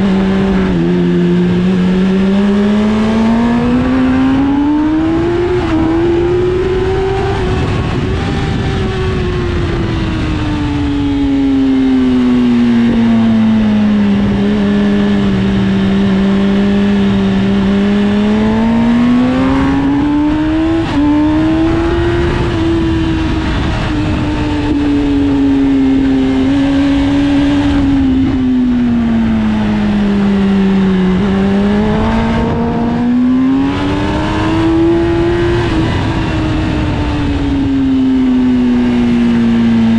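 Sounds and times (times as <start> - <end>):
motorcycle engine at speed: 0.0 - 39.9
wind rushing: 17.0 - 38.0.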